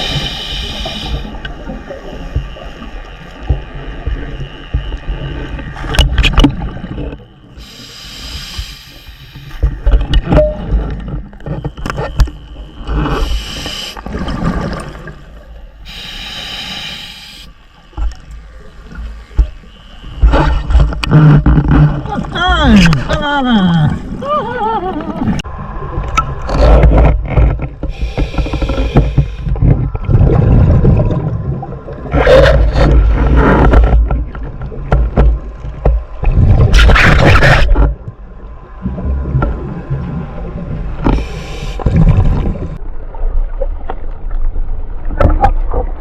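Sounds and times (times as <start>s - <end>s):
regulator hissing inhale: 0.0s - 1.4s, 7.6s - 9.6s, 13.0s - 14.1s, 15.8s - 17.9s, 27.9s - 29.6s, 41.1s - 41.9s
exhaled air bubbling: 20.1s - 35.4s.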